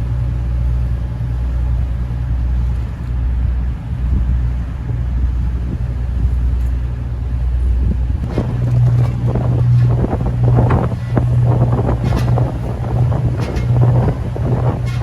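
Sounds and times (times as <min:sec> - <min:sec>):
low engine drone: 0:00.0 - 0:15.0
wind buffeting microphone: 0:01.7 - 0:15.0.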